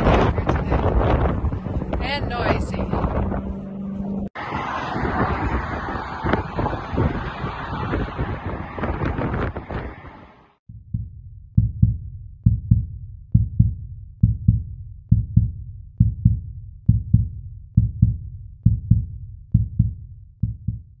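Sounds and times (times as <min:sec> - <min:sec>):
deep heartbeat-like thumps: 0:10.7 - 0:21.0.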